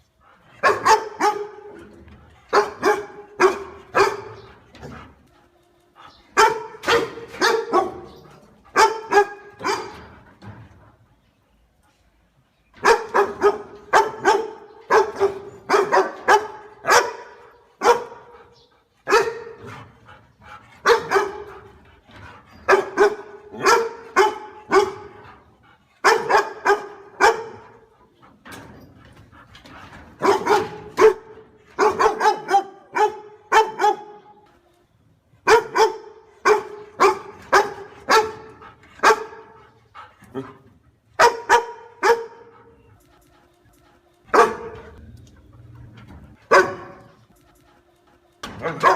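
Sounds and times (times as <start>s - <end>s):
dog barking: 0.6s - 1.8s, 2.5s - 4.5s, 6.4s - 10.1s, 12.8s - 18.4s, 19.1s - 19.7s, 20.8s - 21.6s, 22.7s - 25.2s, 26.0s - 27.9s, 30.2s - 34.3s, 35.5s - 39.6s, 41.2s - 42.6s, 44.3s - 45.0s, 46.5s - 47.2s, 48.5s - 48.9s.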